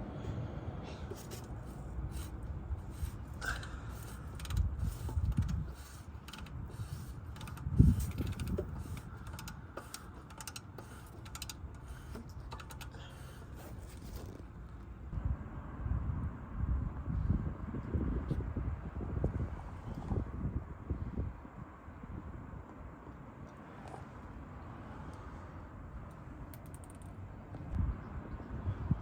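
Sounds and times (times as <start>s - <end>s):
hand tools clicking on metal: 1.1s - 14.2s.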